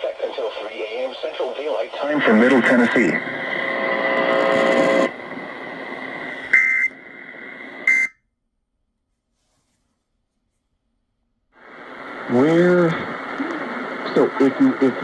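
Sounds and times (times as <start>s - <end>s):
radio hiss: 0.0s - 8.1s, 11.6s - 15.0s
faint steady whistle: 7.8s - 8.2s.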